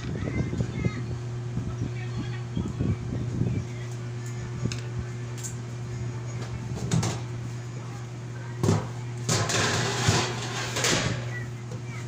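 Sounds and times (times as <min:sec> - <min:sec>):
steady low hum: 0:00.0 - 0:12.0
scraping and rattling: 0:09.3 - 0:11.3.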